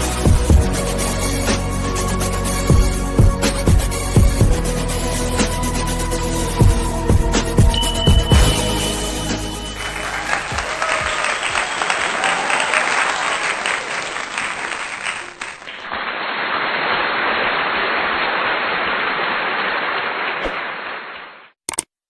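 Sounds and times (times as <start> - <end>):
applause: 9.0 - 21.6.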